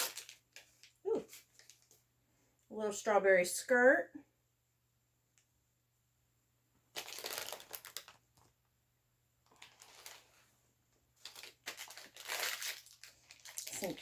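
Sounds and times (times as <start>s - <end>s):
packaging crinkling and tearing: 0.0s - 2.0s, 6.9s - 8.5s, 9.4s - 10.3s, 11.2s - 14.0s.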